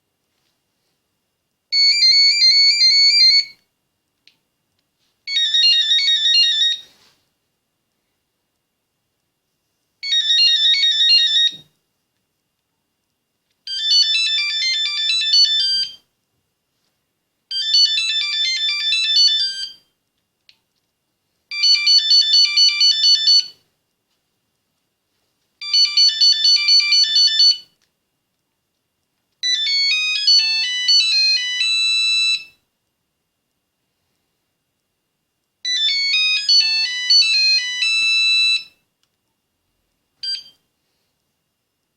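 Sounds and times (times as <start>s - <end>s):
mobile phone ringtone melodies: 1.8s - 3.6s, 5.3s - 6.9s, 10.0s - 11.7s, 13.7s - 16.0s, 17.5s - 19.9s, 21.5s - 23.6s, 25.6s - 27.7s, 29.4s - 32.6s, 35.7s - 38.8s.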